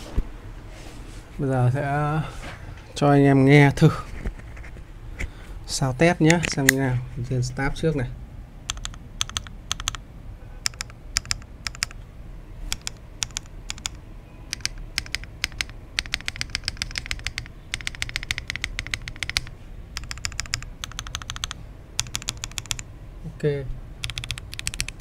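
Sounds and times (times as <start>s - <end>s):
mechanical keyboard keys clacking: 8.7s - 10.0s, 10.6s - 12.0s, 12.7s - 22.8s, 24.0s - 25.0s.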